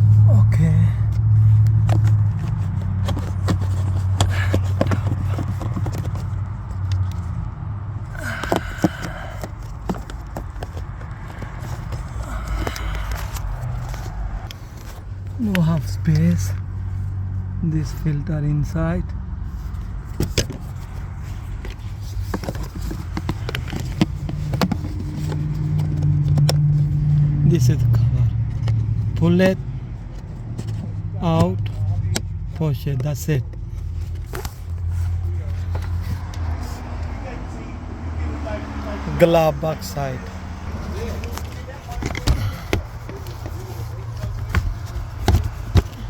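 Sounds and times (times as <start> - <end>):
plastic clicks and scrapes: 1.5 - 7.4, 8.2 - 15.3, 19.6 - 27.2, 40.9 - 46.0.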